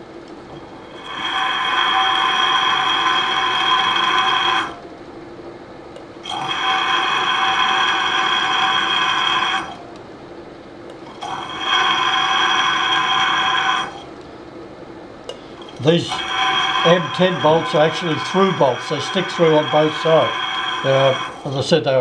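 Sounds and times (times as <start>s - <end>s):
milling machine spindle running: 0.0s - 22.0s
drill bit squealing: 0.5s - 4.8s, 6.2s - 10.0s, 11.0s - 14.2s, 15.3s - 22.0s.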